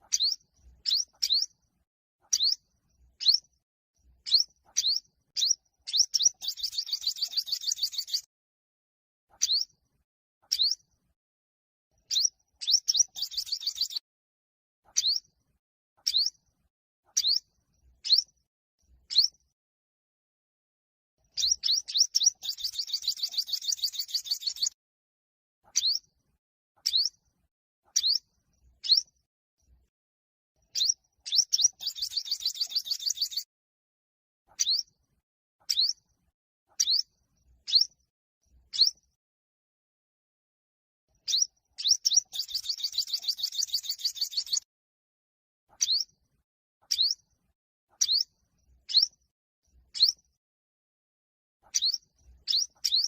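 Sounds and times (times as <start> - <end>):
bird trill: 0.0 - 1.6, 2.2 - 3.5, 4.2 - 8.3, 9.3 - 9.8, 10.4 - 10.9, 12.0 - 14.0, 14.8 - 15.3, 16.0 - 16.4, 17.1 - 18.4, 19.1 - 19.4, 21.3 - 24.8, 25.6 - 26.1, 26.8 - 27.2, 27.9 - 29.2, 30.6 - 33.5, 34.5 - 34.9, 35.6 - 36.0, 36.7 - 38.0, 38.7 - 39.1, 41.2 - 44.7, 45.8 - 46.2, 46.9 - 47.2, 48.0 - 49.2, 49.9 - 50.2, 51.6 - 53.0
sunbird singing: 0.1 - 1.5, 4.2 - 8.3, 12.1 - 14.0, 21.3 - 24.8, 30.7 - 33.4, 41.2 - 44.6, 45.8 - 46.1, 51.7 - 53.0.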